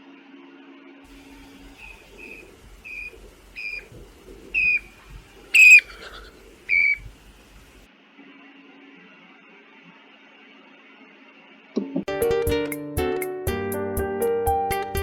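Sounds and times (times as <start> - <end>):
bird-like whistled notes: 1.6 - 3.9, 4.5 - 4.9, 5.5 - 7.1
shrill whistled note: 5.6 - 5.9, 6.7 - 7.0.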